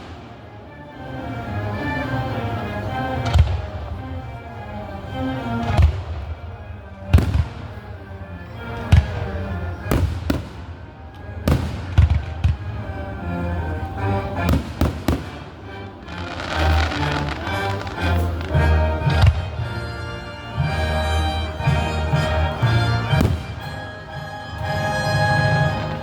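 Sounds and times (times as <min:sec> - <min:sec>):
music playing: 0:00.0 - 0:26.0
fireworks bangs: 0:11.4 - 0:13.0, 0:16.0 - 0:19.6.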